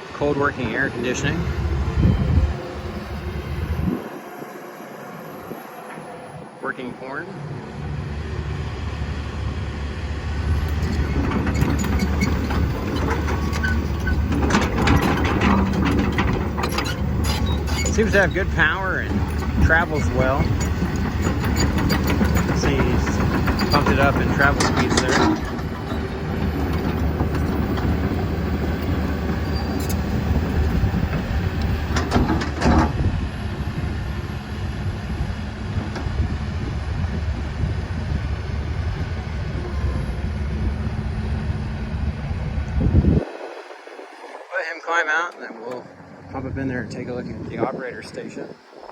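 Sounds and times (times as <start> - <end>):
steel tracks clanking and squeaking: 0.0 - 36.6
excavator diesel engine under load: 0.0 - 48.9.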